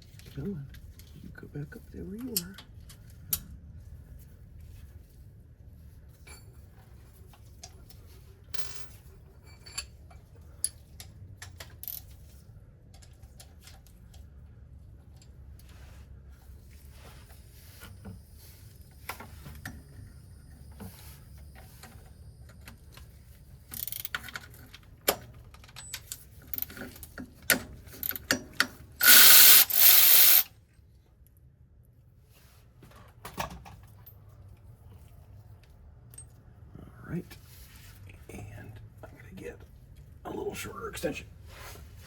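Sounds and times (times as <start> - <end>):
tools clanking: 29.0 - 30.4
hand ratchet clicking: 29.0 - 30.5.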